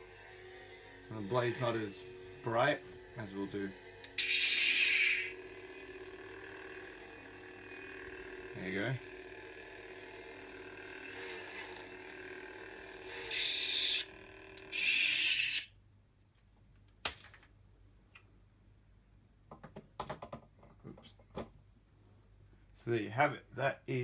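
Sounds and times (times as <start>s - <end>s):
toy lightsaber humming: 0.0s - 15.7s.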